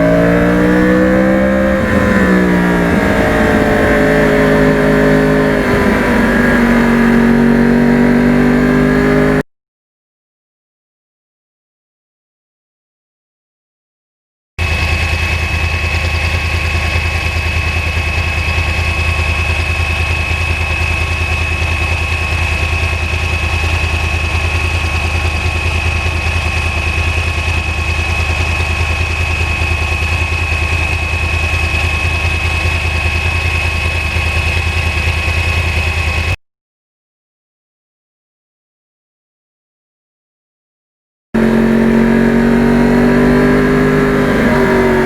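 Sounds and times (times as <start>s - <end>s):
motorcycle engine idling: 14.6s - 36.3s.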